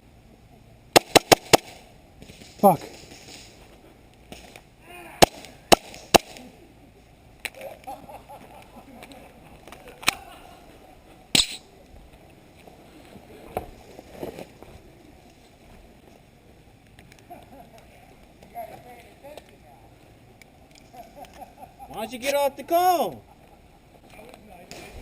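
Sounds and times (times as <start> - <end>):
airsoft pistol shots: 1.0 - 1.8, 5.2 - 6.4, 11.4 - 11.6.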